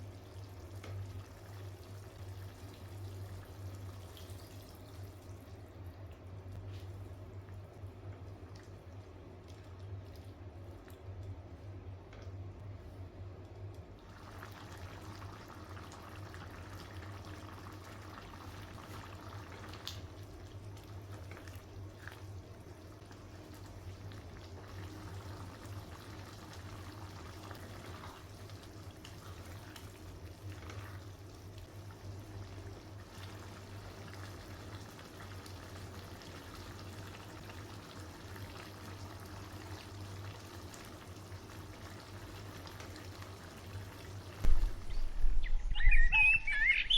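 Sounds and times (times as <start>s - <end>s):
liquid simmering in a pan: 0.0s - 45.3s
constant low hum: 43.9s - 46.9s.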